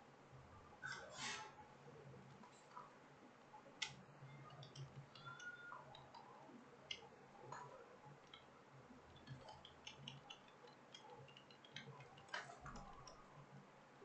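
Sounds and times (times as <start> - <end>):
faint low hum: 0.0 - 14.0
typing on computer keyboard: 3.8 - 8.5, 9.1 - 13.4.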